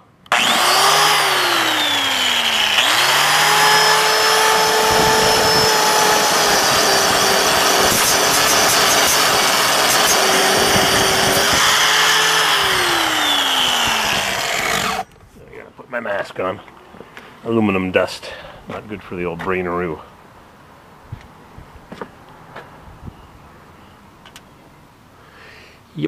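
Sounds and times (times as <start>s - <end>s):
power tool grinding metal: 0.3s - 15.1s.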